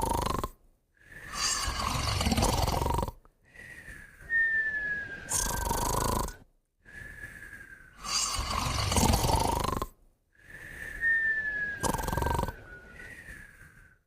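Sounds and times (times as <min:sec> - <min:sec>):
rough snore: 0:00.0 - 0:03.3, 0:04.9 - 0:06.5, 0:08.0 - 0:10.0, 0:11.0 - 0:12.8
nasal whistle: 0:03.5 - 0:06.2, 0:06.9 - 0:09.0, 0:10.4 - 0:14.0.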